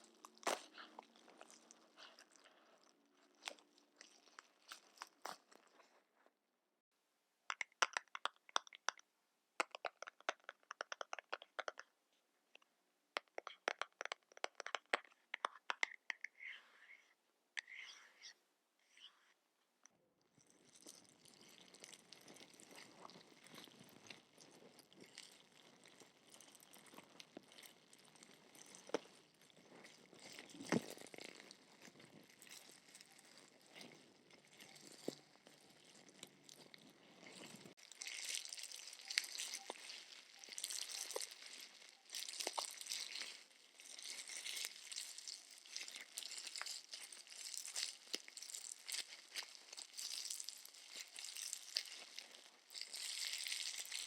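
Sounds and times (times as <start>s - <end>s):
packaging crinkling: 21.0s - 54.0s.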